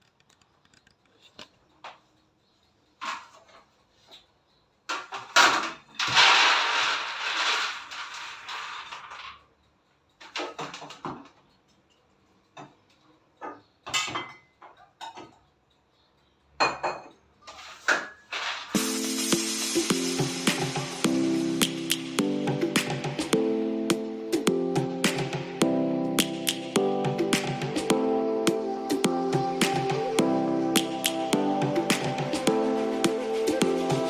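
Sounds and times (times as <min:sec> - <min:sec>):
peanuts rattling in a dish: 0:06.0 - 0:09.5.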